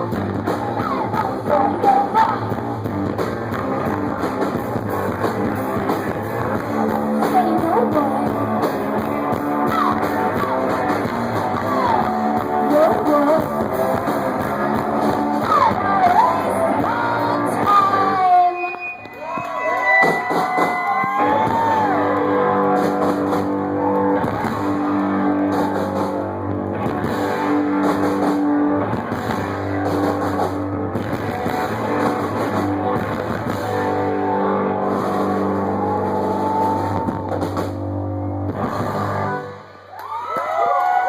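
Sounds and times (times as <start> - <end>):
steady drum beat: 0.0 - 18.0, 19.2 - 34.2, 34.9 - 39.4
electric guitar: 0.0 - 41.0
crowd cheering: 15.4 - 27.0, 31.9 - 38.0, 38.6 - 41.0.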